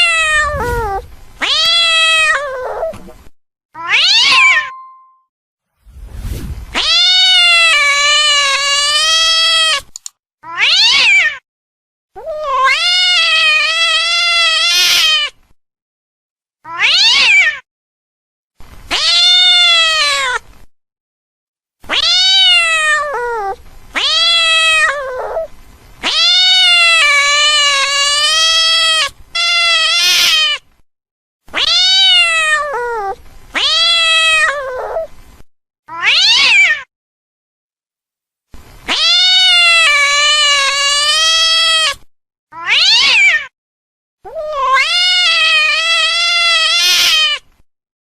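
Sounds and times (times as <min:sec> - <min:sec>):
angry cat yowling: 0:00.0 - 0:03.0, 0:03.8 - 0:04.8, 0:10.4 - 0:11.4, 0:16.7 - 0:17.6, 0:21.9 - 0:30.6, 0:31.5 - 0:35.1, 0:35.9 - 0:36.9, 0:38.9 - 0:43.5, 0:44.3 - 0:47.4.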